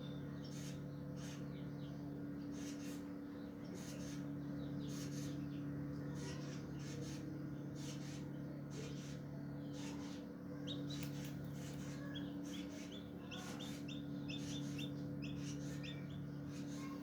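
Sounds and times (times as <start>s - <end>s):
steady low hum: 0.0s - 17.0s
chick peeping: 6.2s - 17.0s.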